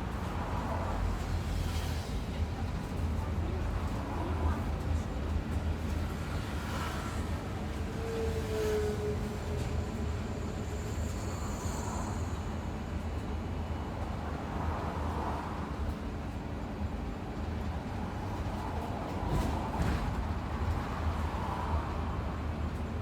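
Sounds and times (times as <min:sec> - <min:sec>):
bus engine and road rumble: 0:00.0 - 0:23.0.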